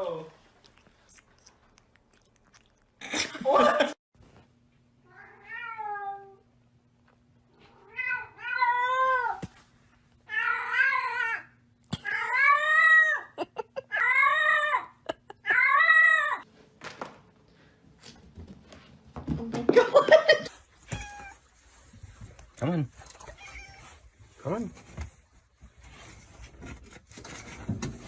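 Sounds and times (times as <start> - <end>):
cat meowing: 20.9 - 21.4, 23.2 - 24.0.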